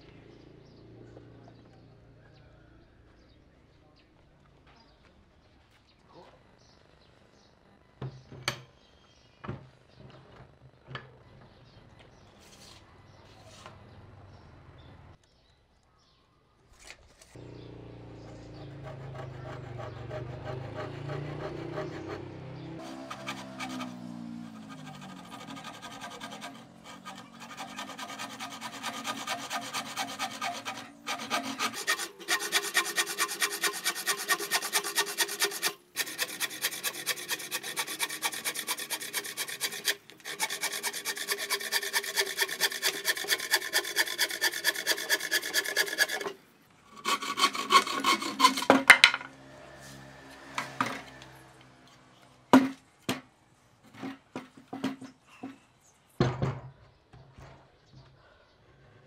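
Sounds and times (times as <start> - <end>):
rasp scraping wood: 18.2 - 49.2.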